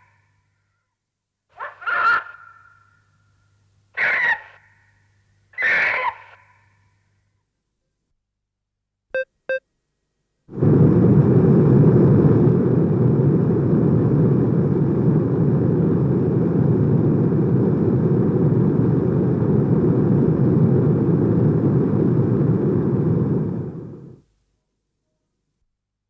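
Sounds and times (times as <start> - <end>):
deep rushing rumble: 10.5 - 24.2.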